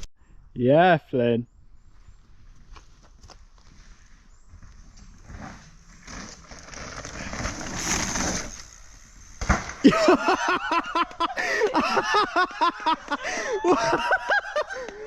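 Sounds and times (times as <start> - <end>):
bike tyres rolling over dirt: 1.9 - 11.4
bike landing thud: 5.2 - 10.2.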